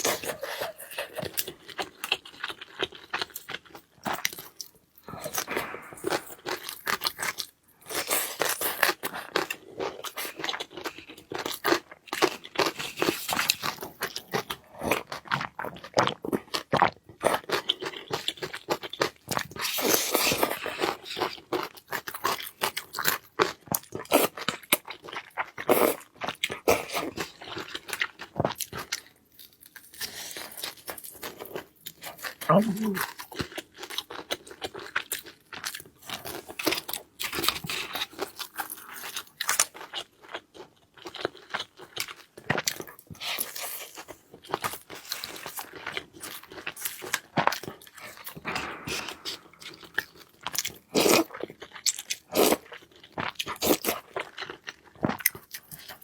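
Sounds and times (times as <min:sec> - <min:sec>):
person chewing crunchy food: 0:00.0 - 0:56.0
wet mouth clicks: 0:32.4 - 0:33.1.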